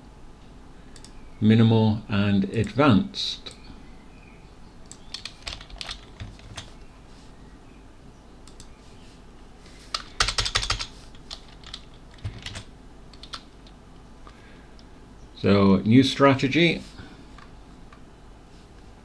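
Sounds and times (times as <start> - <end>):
typing on computer keyboard: 4.9 - 6.7, 9.9 - 13.7.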